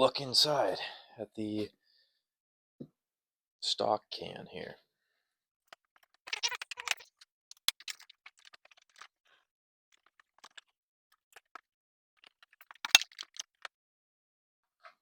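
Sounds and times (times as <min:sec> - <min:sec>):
clicks and rattles of parts: 0:05.7 - 0:09.2, 0:09.9 - 0:13.7.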